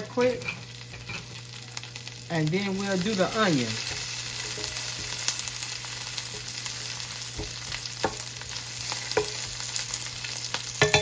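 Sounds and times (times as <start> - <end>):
peppers sizzling in oil: 0.0 - 11.0
utensil clicking on pan: 7.3 - 9.8.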